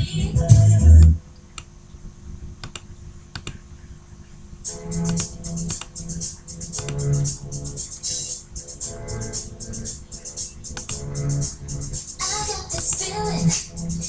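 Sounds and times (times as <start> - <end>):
pop song with rhythmic beat: 0.0 - 1.2, 10.4 - 14.0
faint hum: 0.0 - 14.0
computer keyboard clicks: 2.6 - 3.6.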